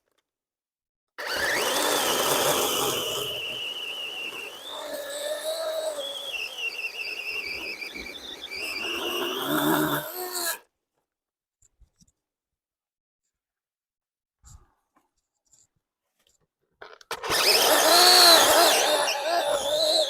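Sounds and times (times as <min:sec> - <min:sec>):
electric chainsaw cutting wood: 0:01.2 - 0:10.6, 0:17.1 - 0:20.0.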